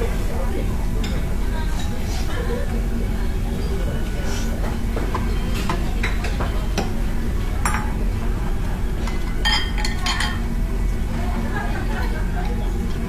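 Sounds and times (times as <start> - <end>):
low background hum: 0.0 - 13.0
utensils clinking against dishes: 3.6 - 8.2, 9.0 - 10.6.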